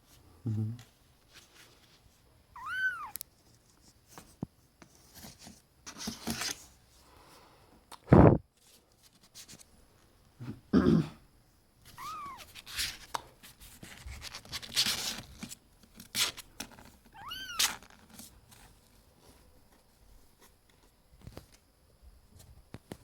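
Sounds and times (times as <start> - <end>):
kitten meowing: 2.6 - 3.2, 12.0 - 12.5, 17.1 - 17.7.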